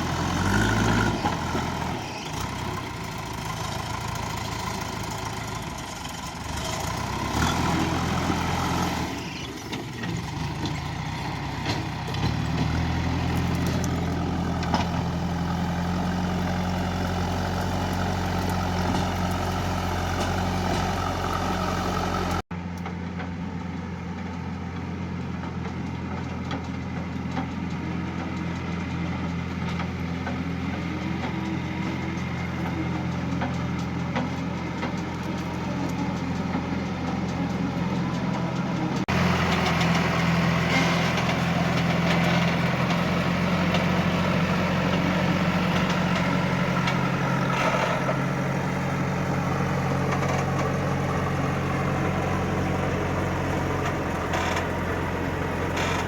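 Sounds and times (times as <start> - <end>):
diesel engine running: 0.0 - 56.0.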